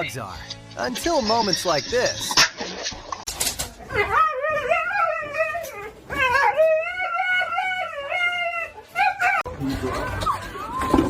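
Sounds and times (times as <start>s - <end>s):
dog howling: 3.9s - 9.5s.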